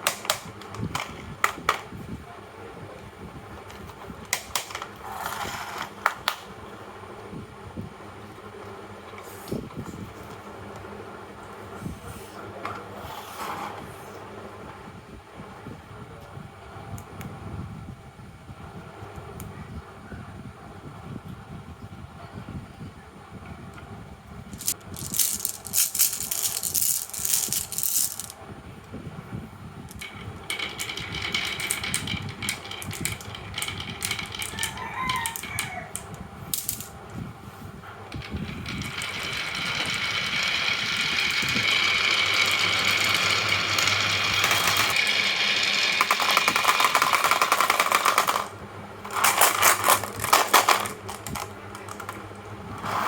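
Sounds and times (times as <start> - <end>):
marbles clattering on wooden tracks: 24.6 - 28.3, 29.9 - 36.9, 38.2 - 53.0.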